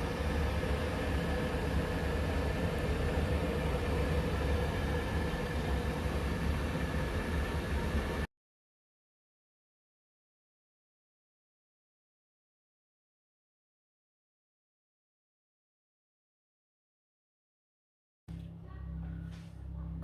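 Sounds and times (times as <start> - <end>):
faint steady whine: 0.0 - 8.3.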